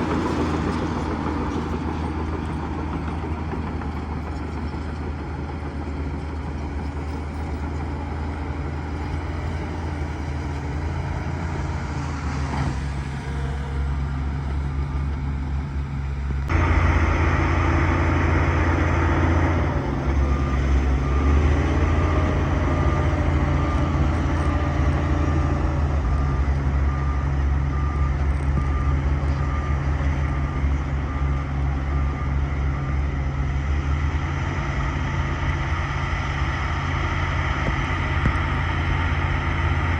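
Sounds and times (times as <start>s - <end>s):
bulldozer diesel engine running: 0.0s - 39.9s
reversing alarm beeping: 16.5s - 37.0s.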